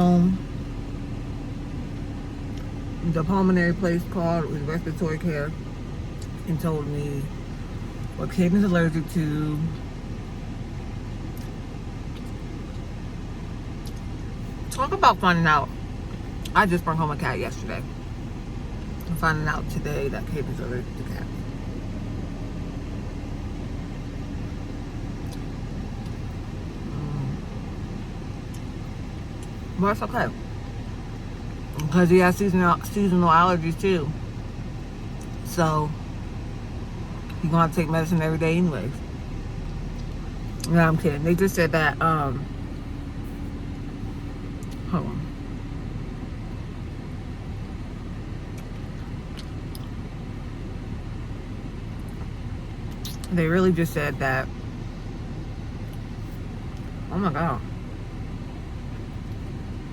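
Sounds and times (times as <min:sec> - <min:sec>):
car rumble from inside cabin: 0:00.0 - 0:59.9.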